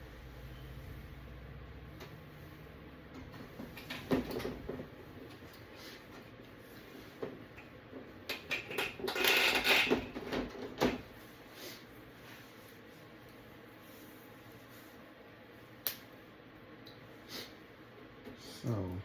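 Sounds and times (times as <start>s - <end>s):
clicks and knocks of parts: 7.6s - 11.0s
scraping and rattling: 8.4s - 10.7s.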